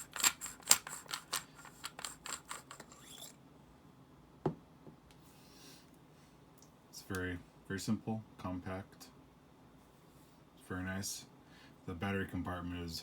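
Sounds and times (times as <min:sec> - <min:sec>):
small clicks and scrapes: 0:00.0 - 0:03.4.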